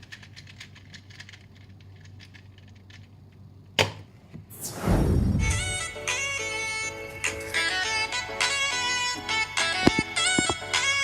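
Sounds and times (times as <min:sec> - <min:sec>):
puzzle cube clicking: 0:00.0 - 0:03.1
downward whoosh: 0:04.5 - 0:06.7
music: 0:04.8 - 0:11.0.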